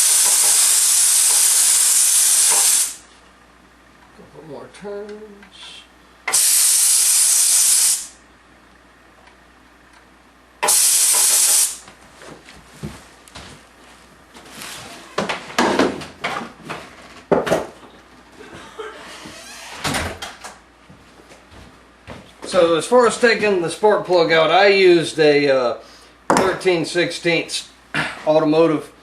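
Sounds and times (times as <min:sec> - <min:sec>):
compressed air blast from nozzle: 0:00.0 - 0:03.0, 0:06.3 - 0:08.2, 0:10.6 - 0:11.8.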